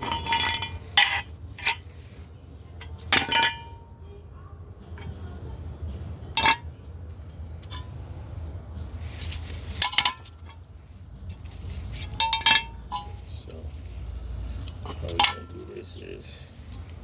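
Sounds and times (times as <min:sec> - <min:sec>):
metal parts clinking: 0:00.0 - 0:01.8.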